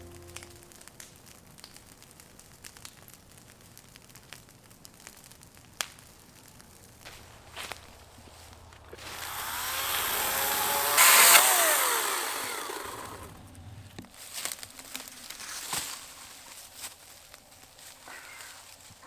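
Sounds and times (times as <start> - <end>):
chainsaw revving and cutting: 8.5 - 13.5.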